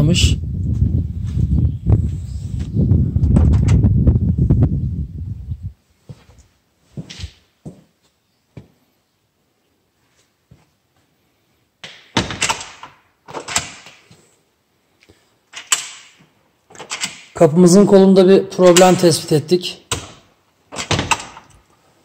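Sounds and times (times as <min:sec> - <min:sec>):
door handle and latch clicks: 0:11.8 - 0:14.0, 0:15.5 - 0:17.4, 0:19.9 - 0:21.6
door swinging and shutting: 0:11.8 - 0:14.1, 0:15.5 - 0:17.4, 0:19.9 - 0:21.6.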